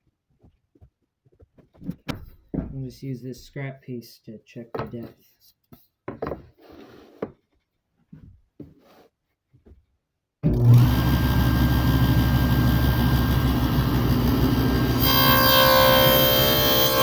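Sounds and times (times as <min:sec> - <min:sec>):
power saw running with deep hum: 0:10.4 - 0:17.0.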